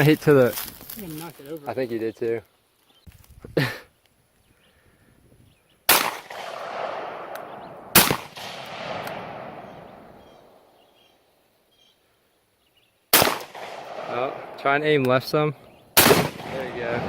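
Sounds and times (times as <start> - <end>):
rifle shots: 5.9 - 10.7, 13.1 - 17.0
rolling echo of gunshots: 5.9 - 10.7, 13.1 - 17.0.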